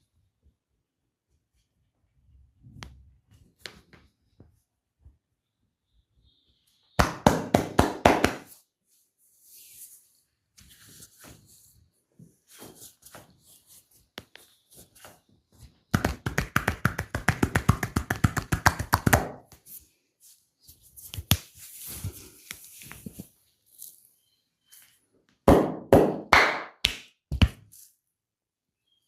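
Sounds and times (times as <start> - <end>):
loud hand slaps: 7.0 - 8.5, 25.5 - 27.6.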